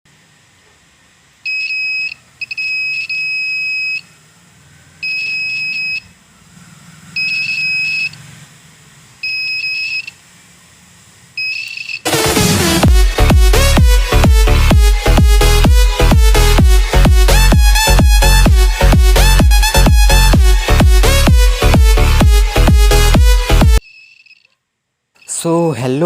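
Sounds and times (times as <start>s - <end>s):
high-pitched alarm buzzer beeping: 1.5s - 4.1s, 5.0s - 6.1s, 7.2s - 8.2s, 9.2s - 10.2s, 11.4s - 12.4s
loud electronic music: 12.1s - 23.8s.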